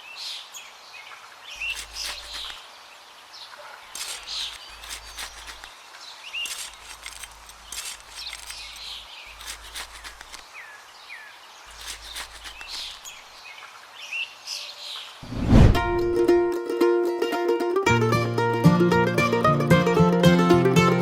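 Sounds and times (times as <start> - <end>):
small birds chirping: 0.0 - 15.2.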